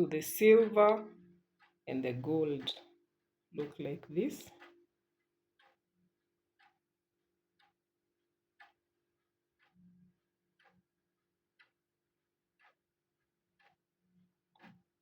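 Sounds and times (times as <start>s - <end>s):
wall clock ticking: 0.0s - 3.0s, 3.6s - 4.9s, 5.5s - 5.9s, 6.5s - 15.0s.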